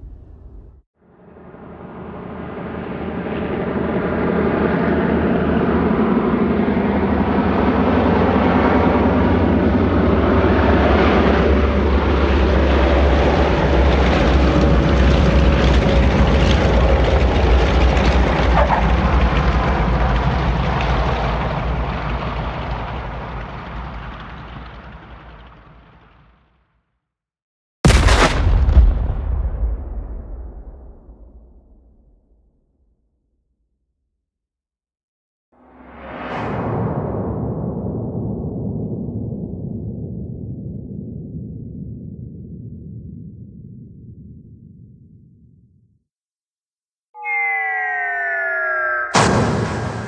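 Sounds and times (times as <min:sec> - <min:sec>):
heavy engine rumble: 0:00.0 - 0:00.8.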